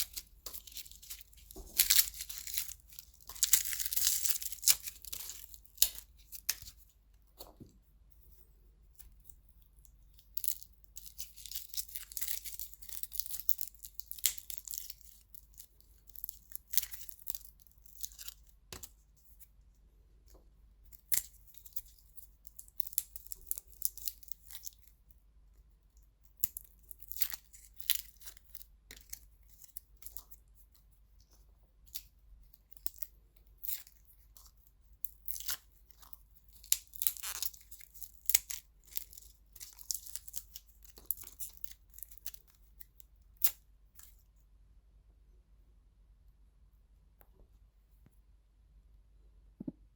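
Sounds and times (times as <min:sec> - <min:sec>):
garlic skins crackling and tearing: 0:00.0 - 0:06.9, 0:10.1 - 0:18.9, 0:20.9 - 0:24.9, 0:26.4 - 0:30.3, 0:31.8 - 0:44.2.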